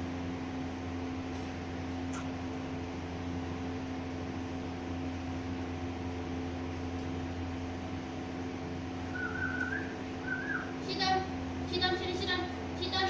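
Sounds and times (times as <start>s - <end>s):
machine hum and hiss: 0.0s - 13.0s
high wavering whine: 9.0s - 12.9s.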